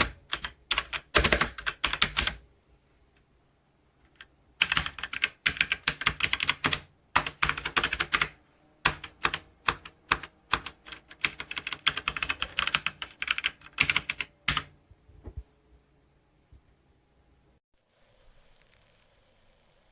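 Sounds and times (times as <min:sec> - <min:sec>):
mechanical keyboard typing: 0:00.0 - 0:02.4, 0:04.1 - 0:14.7.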